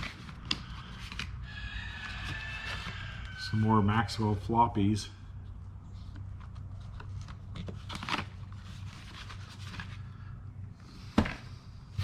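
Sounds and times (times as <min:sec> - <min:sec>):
steady low hum: 0:03.8 - 0:12.0.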